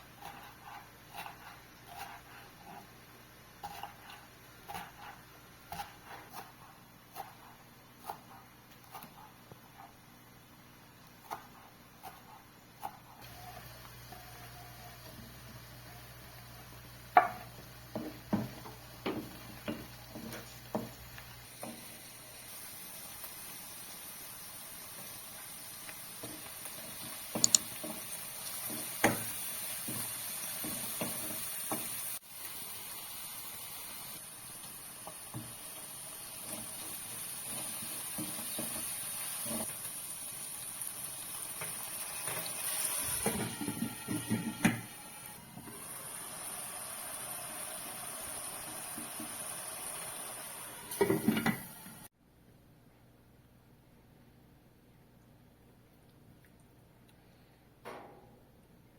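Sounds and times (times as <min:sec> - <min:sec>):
knife chopping on a board: 0:03.6 - 0:09.2
steady hiss: 0:13.2 - 0:52.1.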